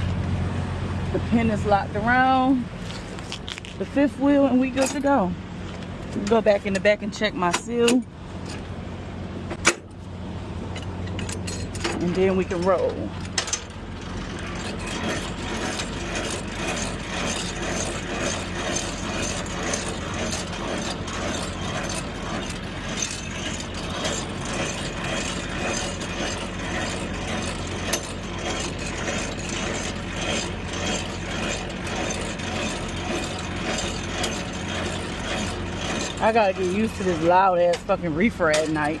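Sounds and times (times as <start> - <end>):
diesel refrigeration unit running: 0.0 - 39.0.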